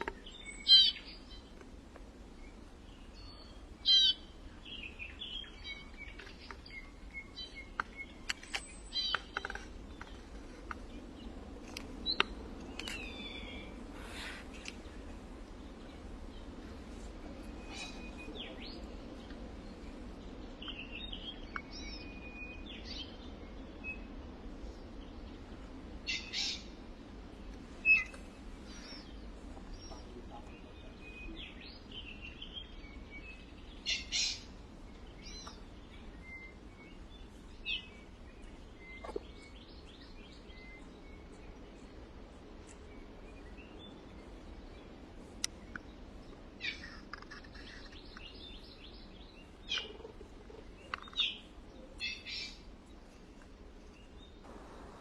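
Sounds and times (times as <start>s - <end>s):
birds chirping and calling: 0.0s - 1.6s, 2.6s - 14.8s, 17.4s - 19.3s, 27.9s - 41.4s, 46.6s - 52.7s.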